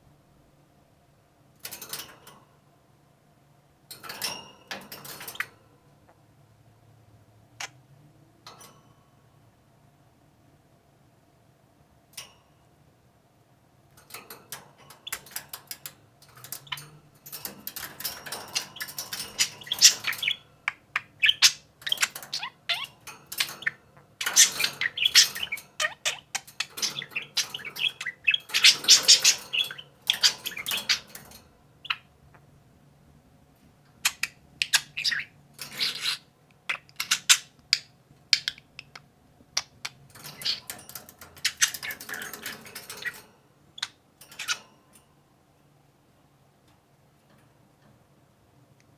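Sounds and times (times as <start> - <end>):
budgerigars chattering and warbling: 17.5 - 32.1, 34.0 - 43.2.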